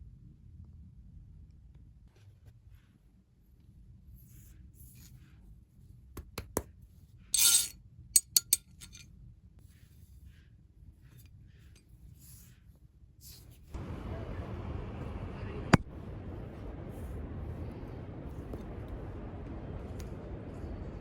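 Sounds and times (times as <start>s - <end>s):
metal scraping rasp: 7.4s - 9.0s
metal sword parts clinking: 7.4s - 9.0s.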